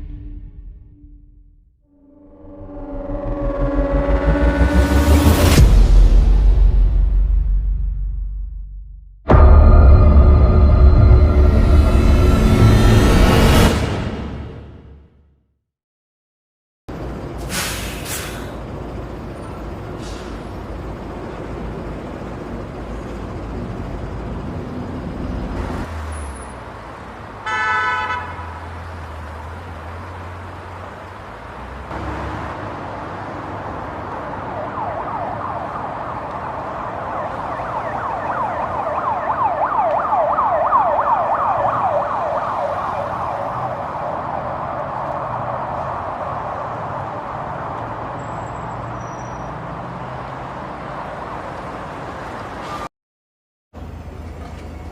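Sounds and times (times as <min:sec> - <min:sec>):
road traffic: 0:01.6 - 0:15.5, 0:16.9 - 0:52.9, 0:53.7 - 0:54.9
car horn blast: 0:27.4 - 0:28.6
emergency siren yelping: 0:34.0 - 0:47.6.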